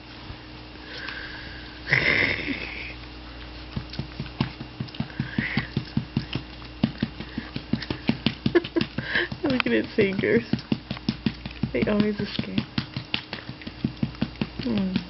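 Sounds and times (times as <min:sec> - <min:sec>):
patting on baby's back: 0:03.7 - 0:15.0.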